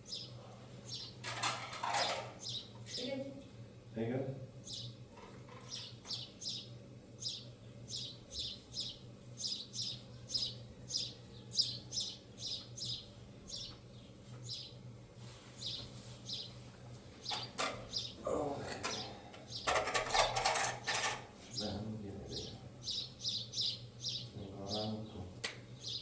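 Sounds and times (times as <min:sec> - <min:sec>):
bird chirping: 0:02.0 - 0:02.7, 0:05.7 - 0:13.8, 0:17.2 - 0:20.4, 0:21.5 - 0:25.2.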